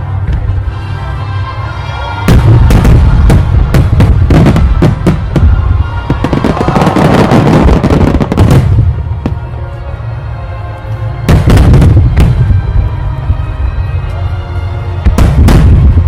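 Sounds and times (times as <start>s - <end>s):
background music: 0.0s - 16.0s
fireworks bangs and crackles: 2.0s - 9.6s, 11.2s - 14.2s, 14.9s - 16.0s.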